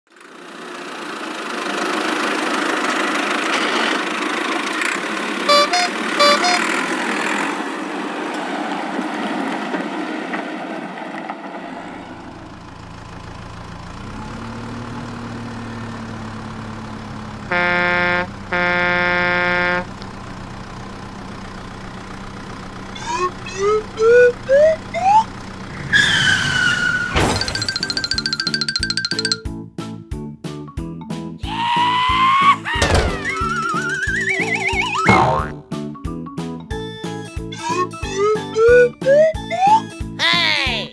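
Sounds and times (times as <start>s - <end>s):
horn honks: 5.4s - 7.1s, 11.8s - 28.2s
music: 5.5s - 6.7s, 27.9s - 40.9s
short beeps: 5.5s - 6.7s
cartoon engine rumbling: 5.5s - 6.8s, 11.7s - 29.4s, 31.5s - 35.7s.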